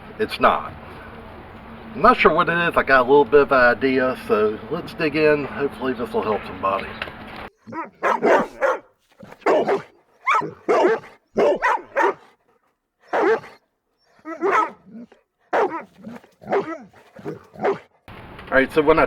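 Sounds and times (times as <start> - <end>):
dog barking: 7.6 - 18.0.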